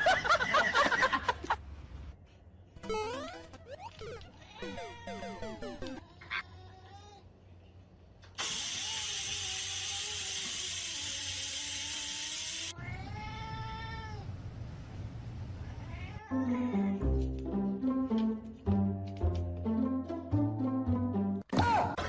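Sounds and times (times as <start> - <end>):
loud hiss of noise: 8.4 - 12.7.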